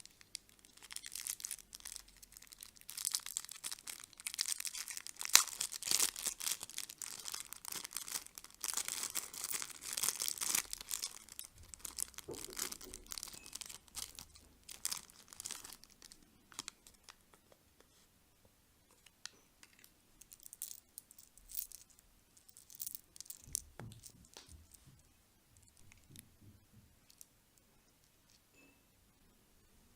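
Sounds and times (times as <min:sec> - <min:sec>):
plastic packaging crinkling: 0:00.0 - 0:17.4.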